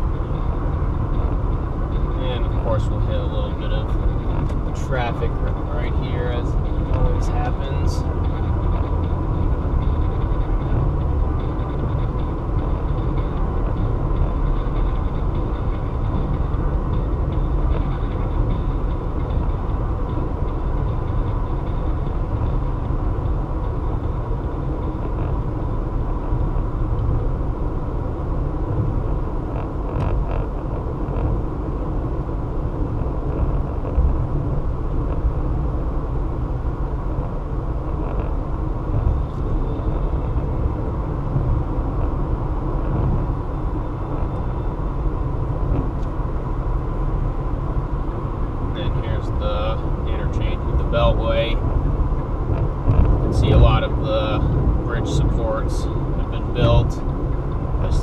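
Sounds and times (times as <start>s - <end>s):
car engine rumble: 0.0s - 58.0s.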